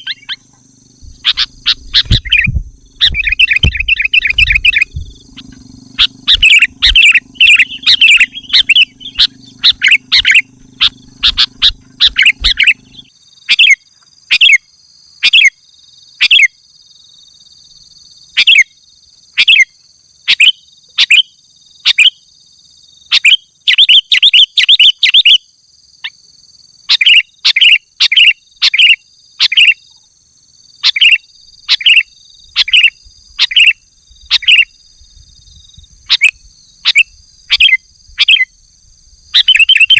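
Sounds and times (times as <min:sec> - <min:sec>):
bird chirping song: 0:00.0 - 0:39.9.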